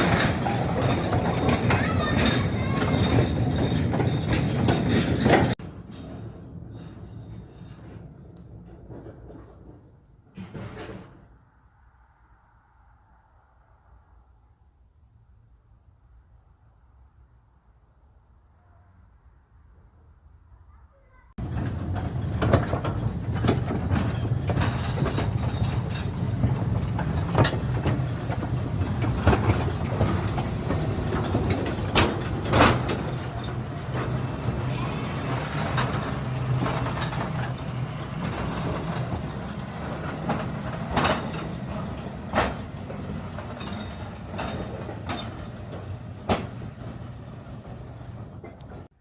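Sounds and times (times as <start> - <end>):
wheels clicking on rails: 0.0 - 11.3, 21.4 - 49.0
locomotive low rumble: 0.0 - 11.5, 21.4 - 49.0.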